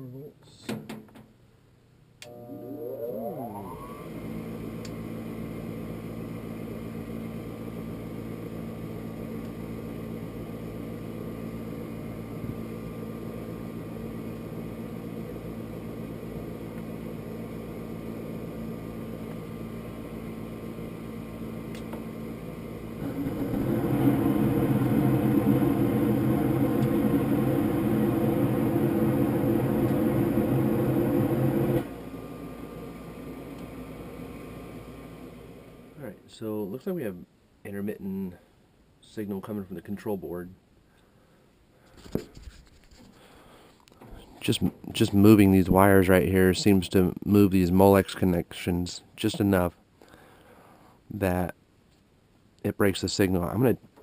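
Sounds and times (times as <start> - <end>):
furnace motor whine and hum: 2.2 - 36.2.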